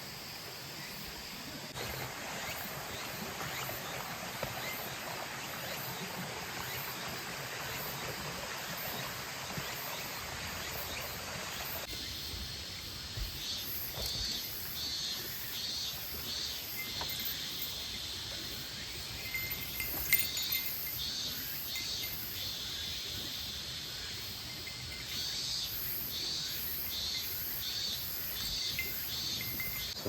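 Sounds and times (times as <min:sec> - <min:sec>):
crickets chirping: 0:00.0 - 0:05.9, 0:08.9 - 0:30.0
mountain stream rushing: 0:01.7 - 0:11.9, 0:16.8 - 0:21.0.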